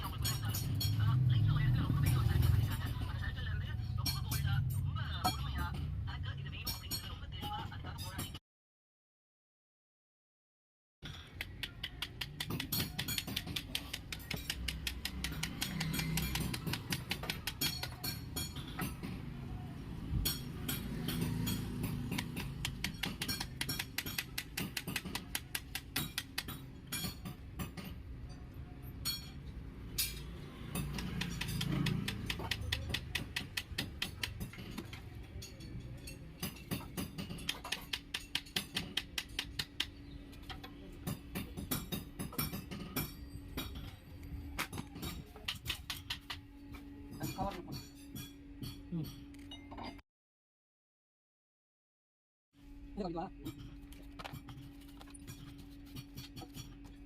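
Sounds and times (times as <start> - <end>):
fast clicking beat: 11.4 - 18.0.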